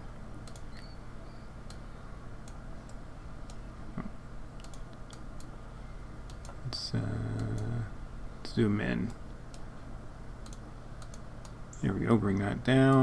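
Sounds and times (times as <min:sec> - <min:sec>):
low room hum: 0:00.0 - 0:13.0
computer mouse clicking: 0:00.4 - 0:00.9, 0:04.6 - 0:05.5, 0:06.3 - 0:06.6, 0:10.4 - 0:11.6.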